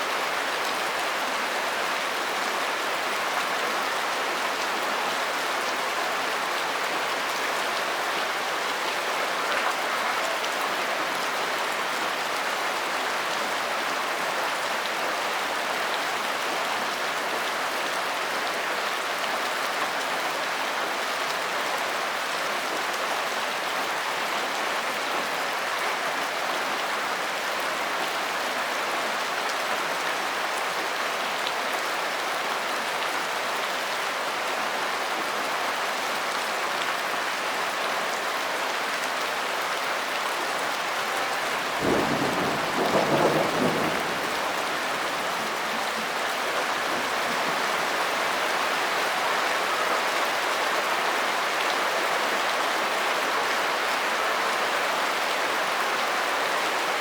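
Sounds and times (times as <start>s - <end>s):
steady rain: 0.0s - 57.0s
thunder clap: 41.6s - 46.0s.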